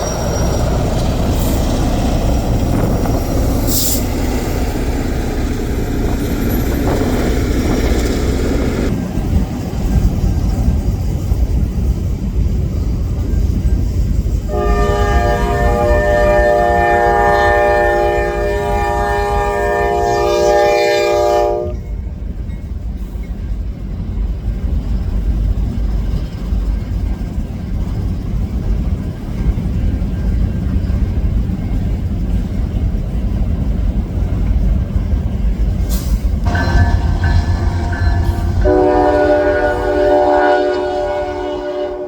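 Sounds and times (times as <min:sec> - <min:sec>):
low rumble of moving train: 0:00.0 - 0:42.0
locomotive horn chord: 0:14.5 - 0:21.8, 0:36.5 - 0:42.0.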